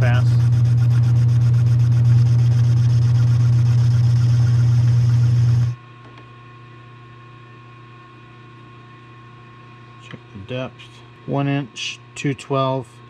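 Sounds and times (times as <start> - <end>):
metal lathe running: 0.0 - 5.8.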